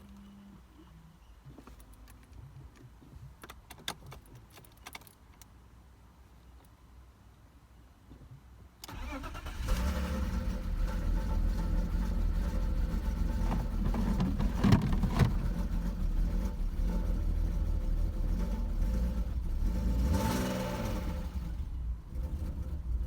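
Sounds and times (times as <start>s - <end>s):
car engine running rough: 8.9s - 23.0s
engine popping: 8.9s - 23.0s.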